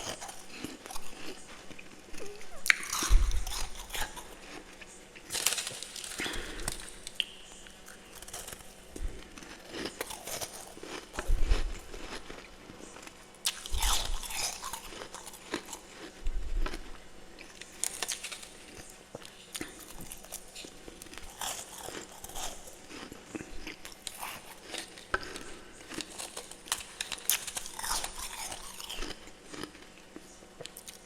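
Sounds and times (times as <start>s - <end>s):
crunchy frost being chewed: 0.0s - 31.0s.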